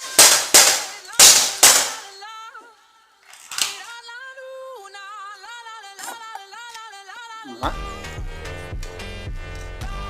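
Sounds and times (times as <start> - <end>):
air gun shots: 0.0 - 2.1
background music held melody: 0.0 - 10.0.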